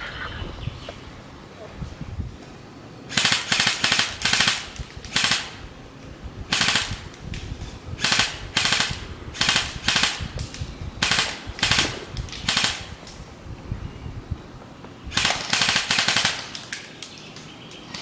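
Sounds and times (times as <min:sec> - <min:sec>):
airsoft gun firing bursts: 0:03.1 - 0:05.6, 0:06.5 - 0:07.1, 0:08.0 - 0:10.4, 0:11.0 - 0:13.1, 0:15.1 - 0:16.8.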